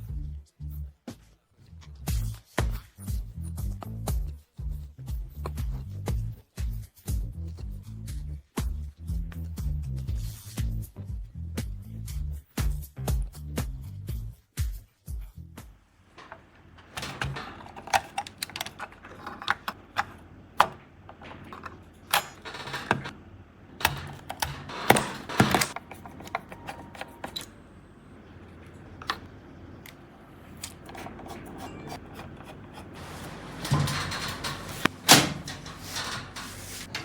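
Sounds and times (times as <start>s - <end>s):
computer parts clicking and knocking: 16.2s - 23.2s, 23.8s - 27.6s, 30.6s - 37.0s.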